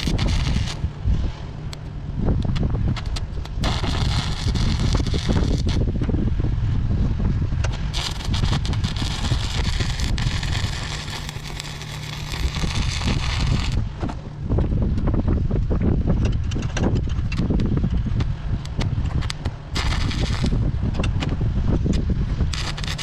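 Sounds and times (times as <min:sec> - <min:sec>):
steady hissing noise: 0:00.0 - 0:07.1, 0:07.7 - 0:14.4
wind buffeting microphone: 0:00.0 - 0:23.0.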